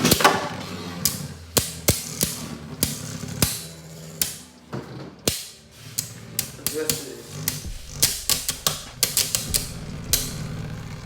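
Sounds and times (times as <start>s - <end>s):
spinning tops whirring: 0.0s - 4.7s, 5.4s - 11.0s
spinning tops clacking together: 5.3s - 11.0s.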